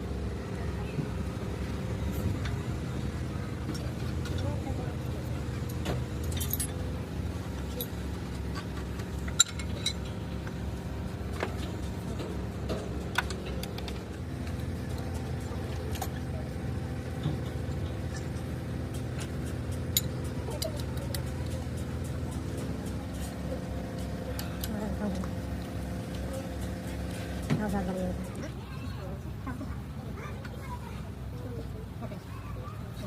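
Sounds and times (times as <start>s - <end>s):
engine idling: 0.0s - 33.0s
sharp metallic clinks: 5.5s - 6.9s.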